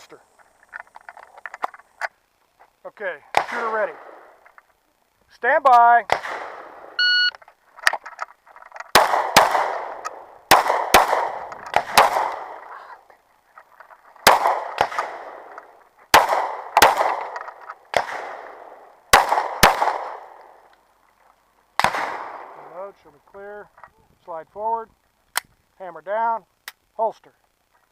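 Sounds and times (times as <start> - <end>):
pistol shots echoing: 3.3 - 4.3, 6.1 - 7.0, 8.9 - 12.7, 14.2 - 20.6, 21.8 - 22.7.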